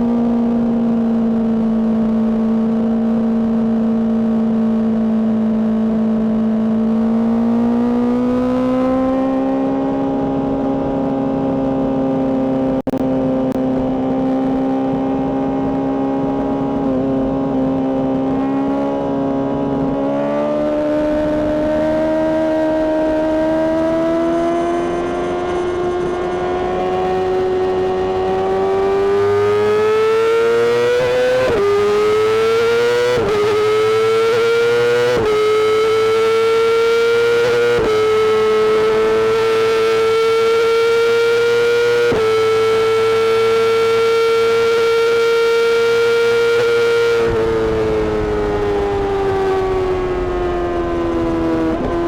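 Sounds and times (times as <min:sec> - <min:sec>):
sport bike engine howling at high revs: 0:00.0 - 0:52.0.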